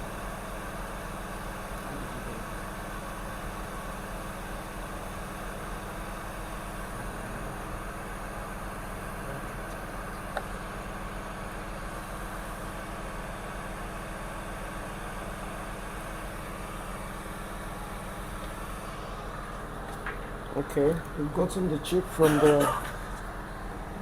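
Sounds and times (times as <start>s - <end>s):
hot air station blowing: 16.1s - 24.0s.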